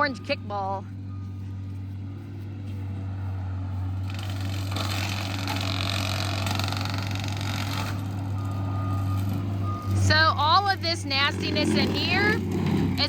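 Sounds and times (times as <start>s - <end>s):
diesel engine humming: 0.0s - 13.0s
brush cutter rushing noise: 2.7s - 10.5s.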